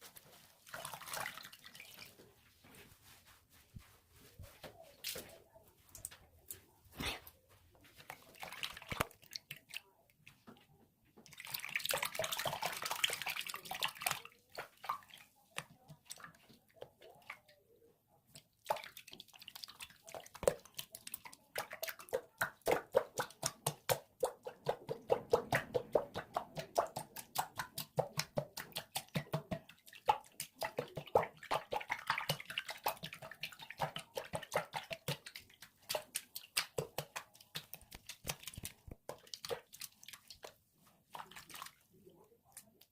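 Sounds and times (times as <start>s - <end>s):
wet squelching soap clicks: 32.3s - 40.6s.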